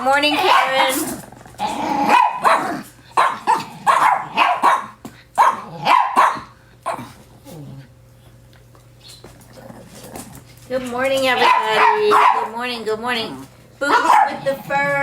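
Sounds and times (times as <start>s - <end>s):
dogs barking: 0.0s - 7.2s, 11.3s - 12.7s, 13.8s - 14.8s.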